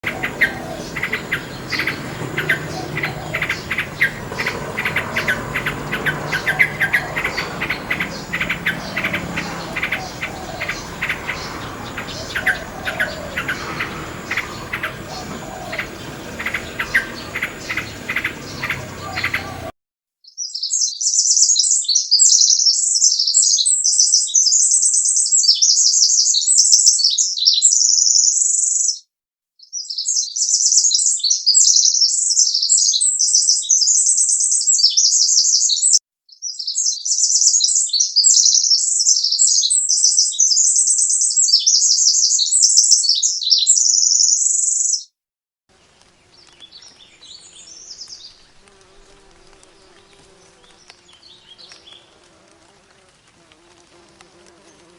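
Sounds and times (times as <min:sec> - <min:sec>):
songbirds chirping: 0:00.0 - 0:19.8, 0:45.7 - 0:54.9
bird singing rapid high song: 0:00.0 - 0:29.0, 0:29.6 - 0:45.1, 0:46.2 - 0:48.8, 0:49.7 - 0:52.2.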